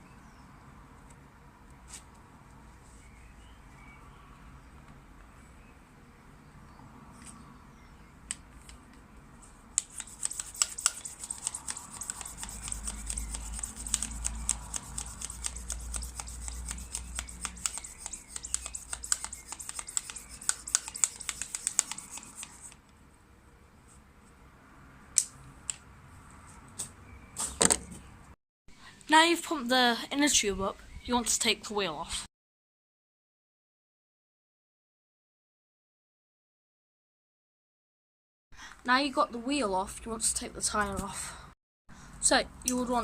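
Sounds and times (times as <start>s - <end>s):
bicycle pump strokes hissing: 10.1s - 22.7s.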